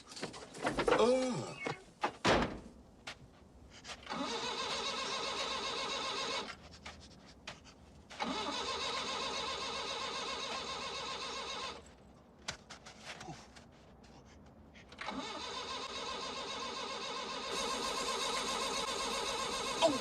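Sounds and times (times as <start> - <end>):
engine cranking on starter: 4.1 - 6.5, 8.1 - 11.8, 15.0 - 20.0.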